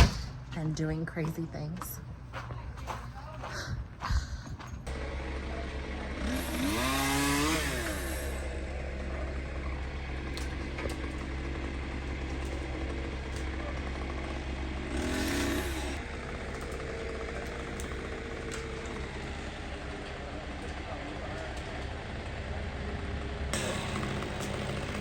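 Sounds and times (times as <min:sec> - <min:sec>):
heavy equipment engine running: 0:04.8 - 0:25.0
chainsaw revving: 0:04.9 - 0:22.0, 0:23.5 - 0:25.0.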